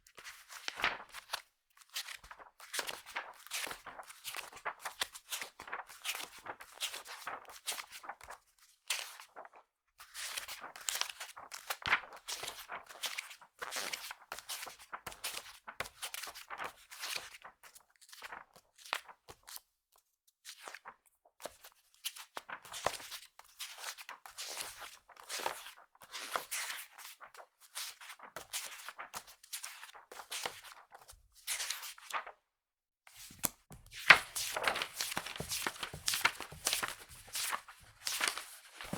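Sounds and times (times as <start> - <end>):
magazine pages flipping: 33.2 - 38.9.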